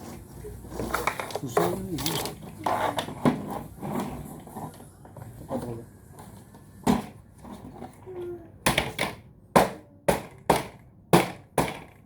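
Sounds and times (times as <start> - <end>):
knocks on hard plastic: 8.7 - 12.0.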